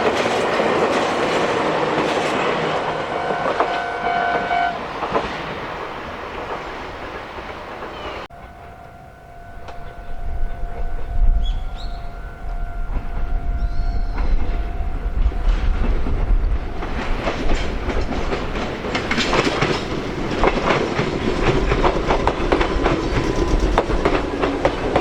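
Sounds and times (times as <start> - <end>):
train rattling past: 0.0 - 25.0
crossing warning bell: 8.3 - 25.0.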